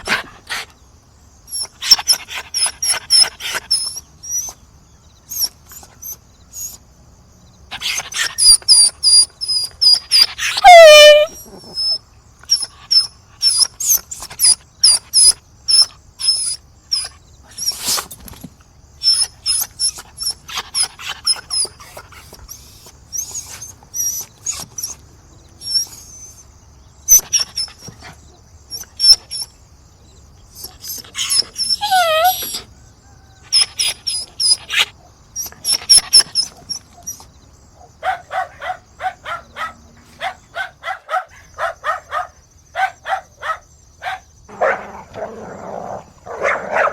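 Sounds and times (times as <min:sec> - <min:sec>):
dog barking and yelping: 0:01.5 - 0:04.6, 0:05.3 - 0:06.8, 0:07.7 - 0:18.1, 0:19.0 - 0:25.0, 0:25.6 - 0:26.5, 0:27.1 - 0:29.6, 0:30.5 - 0:32.8, 0:33.4 - 0:46.9
dog whining: 0:01.5 - 0:04.6, 0:05.3 - 0:06.8, 0:07.7 - 0:18.2, 0:19.0 - 0:25.0, 0:25.6 - 0:26.5, 0:27.1 - 0:29.5, 0:30.5 - 0:32.8, 0:33.4 - 0:37.3.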